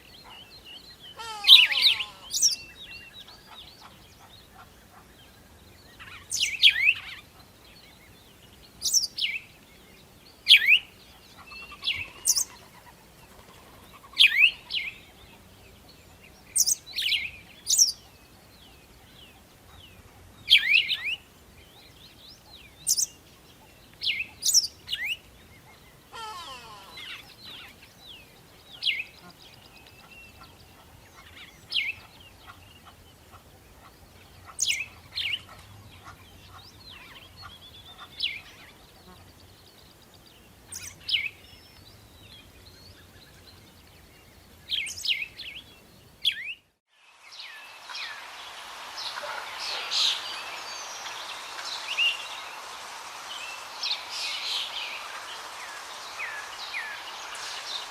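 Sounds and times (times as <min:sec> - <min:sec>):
bird calling with descending notes: 0:01.2 - 0:02.7, 0:26.1 - 0:27.7, 0:47.1 - 0:57.9.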